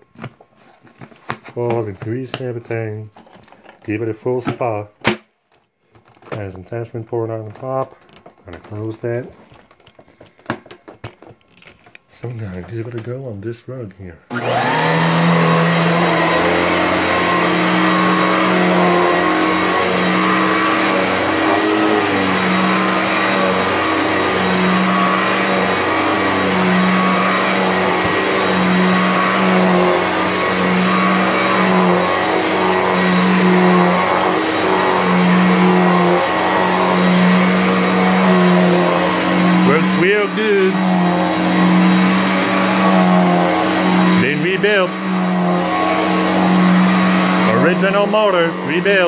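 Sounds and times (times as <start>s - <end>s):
vacuum cleaner running: 7.2s - 10.6s, 14.3s - 49.0s.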